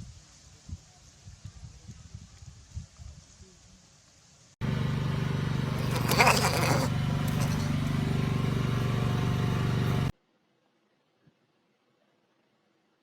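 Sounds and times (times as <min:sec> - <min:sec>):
low outdoor rumble: 0:04.6 - 0:10.1.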